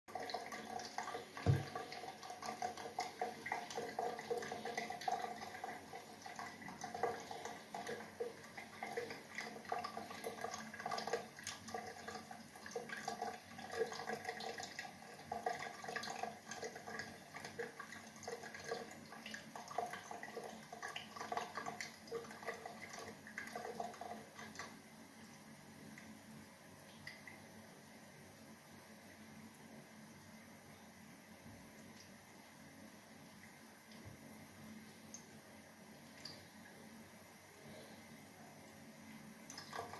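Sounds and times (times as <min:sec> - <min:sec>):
water splashing and dripping: 0:00.8 - 0:03.0.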